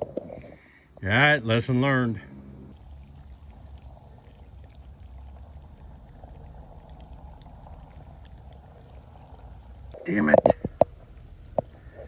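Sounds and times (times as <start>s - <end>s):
high insect trill: 0.0s - 12.0s
water running from tanks: 0.0s - 12.0s.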